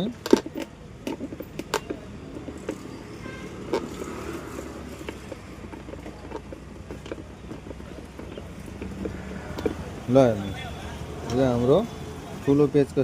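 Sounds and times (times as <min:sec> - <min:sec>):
screwdriver metallic clicks and scrapes: 0:00.0 - 0:10.0.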